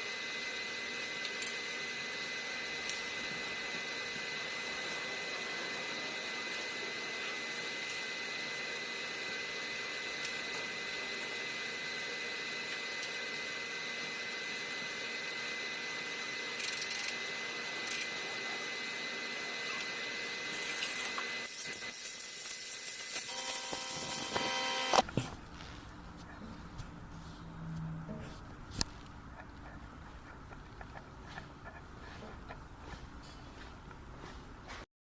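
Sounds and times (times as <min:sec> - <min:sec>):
high whine: 0:00.0 - 0:25.1
mechanical hiss and hum: 0:00.0 - 0:34.8.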